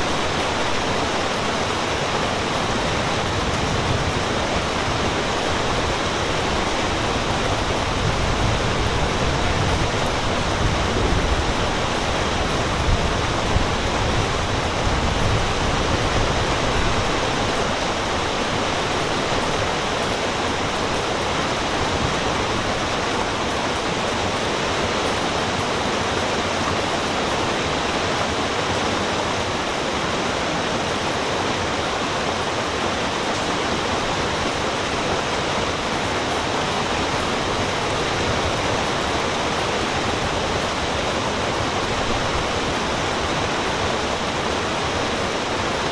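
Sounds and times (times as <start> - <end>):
waterfall rushing: 0.0 - 45.9.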